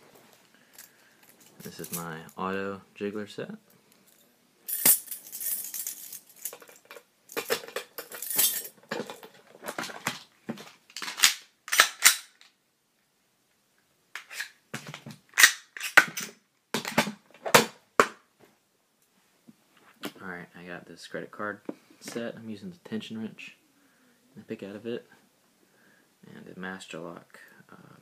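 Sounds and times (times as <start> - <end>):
metal keys jangling: 4.7 - 8.8.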